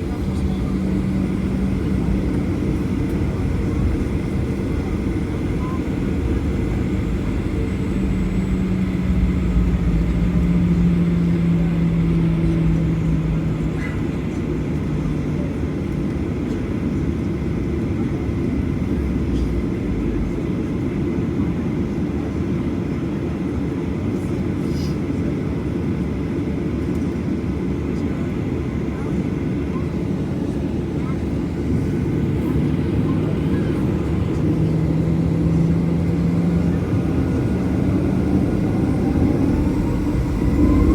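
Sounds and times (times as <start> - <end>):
jet engines rumbling: 0.0 - 40.9.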